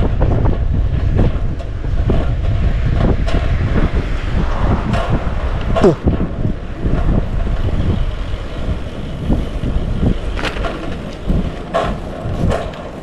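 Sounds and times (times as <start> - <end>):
bicycle clanks: 0.0 - 13.0
bicycle rattling: 0.0 - 13.0
wind on microphone: 0.0 - 13.0
person speaking: 5.7 - 6.1.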